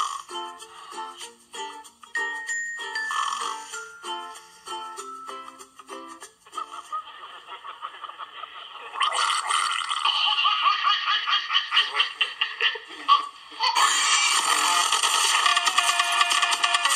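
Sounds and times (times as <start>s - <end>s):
person laughing: 9.9s - 16.8s.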